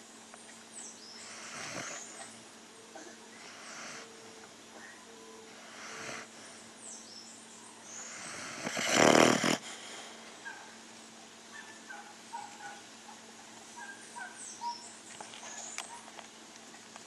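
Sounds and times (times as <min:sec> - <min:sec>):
steady low hum: 0:00.0 - 0:17.0
pet snoring: 0:01.2 - 0:02.4, 0:03.0 - 0:04.4, 0:05.4 - 0:06.4, 0:07.9 - 0:10.2.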